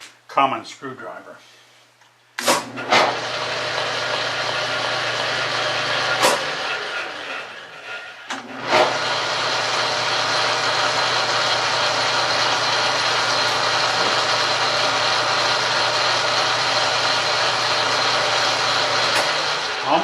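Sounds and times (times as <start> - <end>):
metal lathe humming: 2.8 - 20.0.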